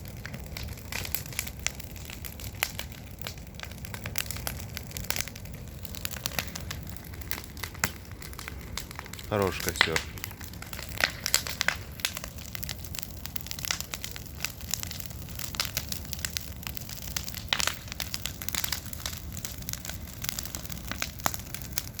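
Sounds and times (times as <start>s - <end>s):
campfire crackling: 0.0s - 22.0s.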